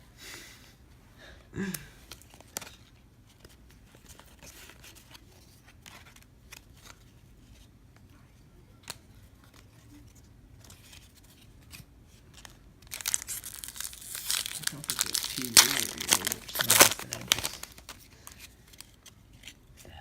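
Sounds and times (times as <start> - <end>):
trading cards rustling and clicking: 8.8 - 19.8.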